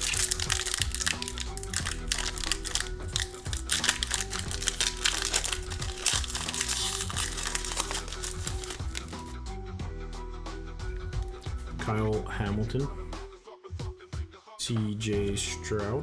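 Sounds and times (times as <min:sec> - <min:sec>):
wrapper crinkling: 0:00.0 - 0:09.4
background music: 0:00.0 - 0:16.0.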